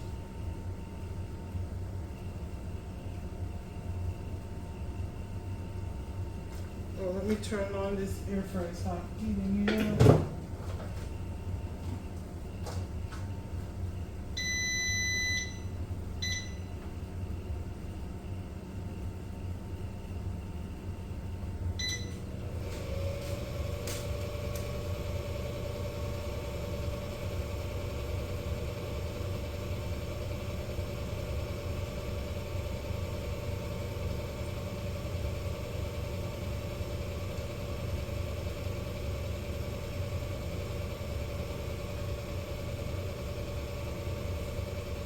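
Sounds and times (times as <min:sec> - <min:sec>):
air fryer fan whirring hum: 0:00.0 - 0:45.0
air fryer beep: 0:14.4 - 0:16.8, 0:21.8 - 0:23.2, 0:25.5 - 0:45.0.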